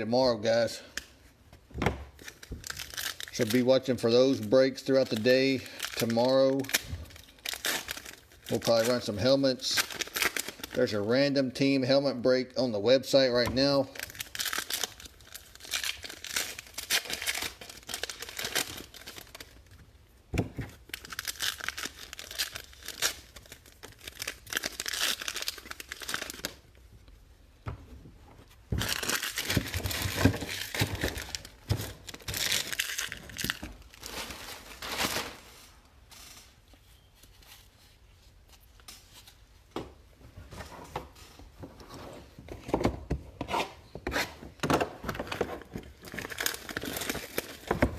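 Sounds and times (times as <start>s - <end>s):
wrappers tearing and crinkling: 2.2s - 10.9s, 13.8s - 19.8s, 20.7s - 26.6s, 28.8s - 36.6s, 45.3s - 47.9s.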